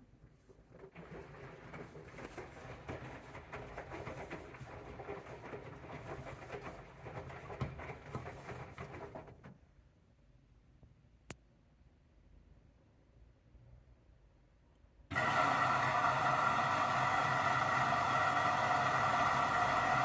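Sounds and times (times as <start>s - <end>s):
wet laundry tumbling: 0.1s - 9.6s.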